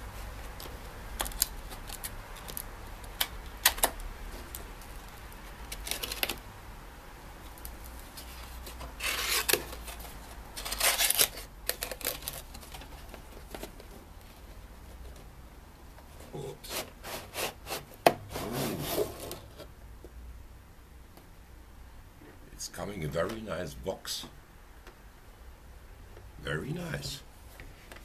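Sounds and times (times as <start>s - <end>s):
packaging rustling and scraping: 4.4s - 6.4s, 8.0s - 14.5s, 16.6s - 19.7s.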